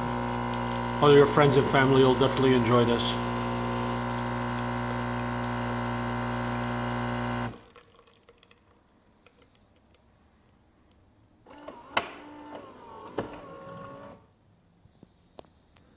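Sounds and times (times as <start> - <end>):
espresso machine pump humming: 0.0 - 7.7.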